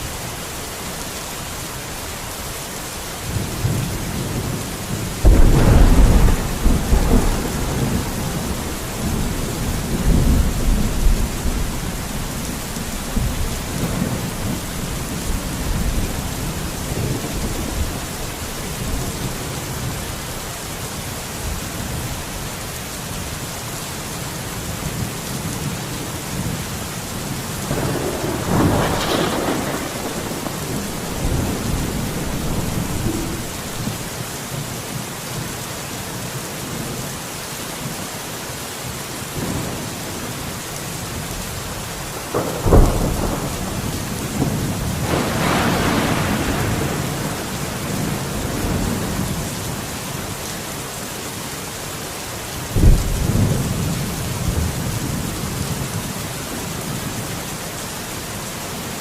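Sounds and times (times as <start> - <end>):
steady rain: 0.0 - 59.0
rolling thunder: 3.3 - 19.5, 27.5 - 34.1, 42.2 - 49.7, 52.7 - 55.9
loud thunderclap: 3.6 - 18.0, 27.6 - 34.1, 42.3 - 49.4, 52.8 - 54.8.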